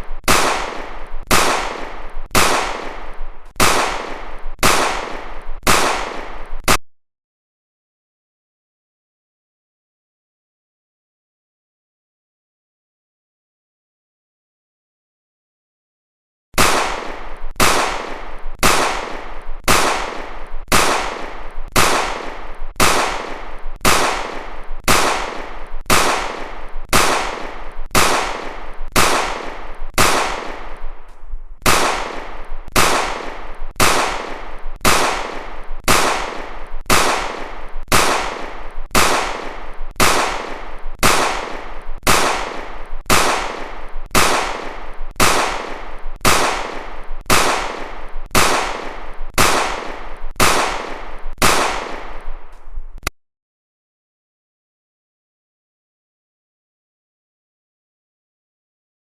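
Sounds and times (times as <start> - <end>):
pistol gunshots: 0.0 - 6.8, 16.6 - 52.8.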